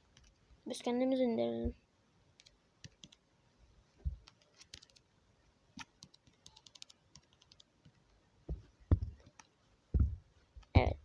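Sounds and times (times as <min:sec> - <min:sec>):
keyboard typing: 0:02.4 - 0:03.2, 0:04.2 - 0:05.0, 0:05.8 - 0:08.0
dull knock: 0:08.5 - 0:09.2, 0:10.0 - 0:10.2.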